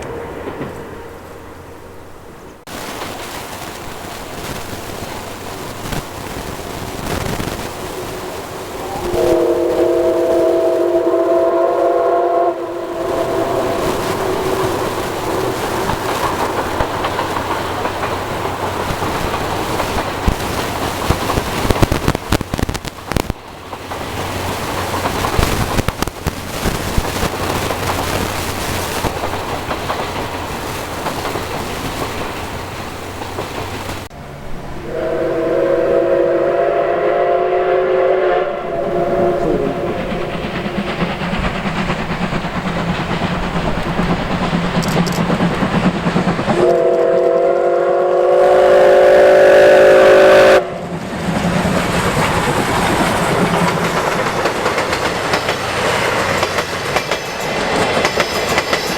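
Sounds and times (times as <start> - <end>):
steam locomotive passing: 0.0 - 58.9
locomotive exhaust chuffing: 7.6 - 34.1, 34.8 - 58.8
steam whistle: 8.0 - 16.6, 34.8 - 40.6, 46.6 - 50.8
running gear clacks: 43.6 - 46.5.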